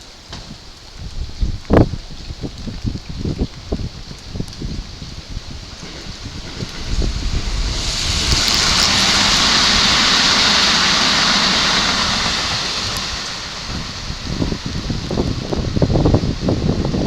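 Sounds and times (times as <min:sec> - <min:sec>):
vehicle passing by: 0:06.3 - 0:13.2.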